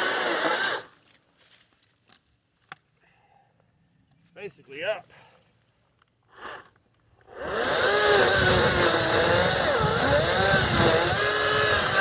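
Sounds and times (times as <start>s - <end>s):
electric chainsaw cutting wood: 0.0s - 1.0s, 7.3s - 12.0s.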